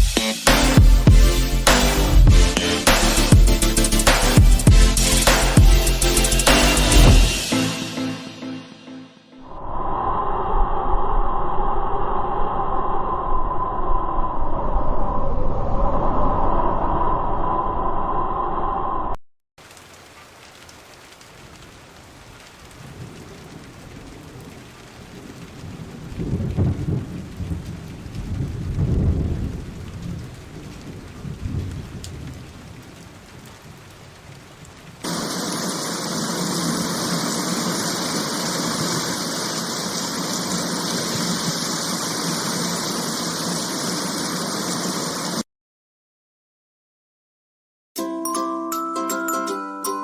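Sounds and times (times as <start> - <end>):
rain falling: 0.0 - 7.6, 19.6 - 45.4
heavy downpour hiss: 0.0 - 8.0, 19.6 - 45.4
thunder rumbling: 22.2 - 45.2.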